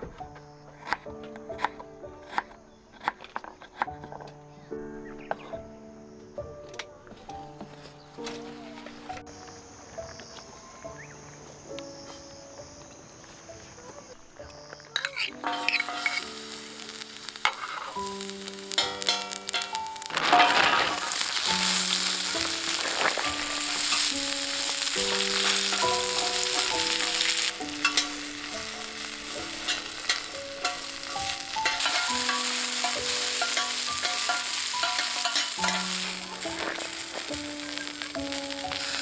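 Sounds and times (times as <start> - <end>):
soft background music: 0.0 - 39.0
food sizzling in a pan: 15.0 - 39.0.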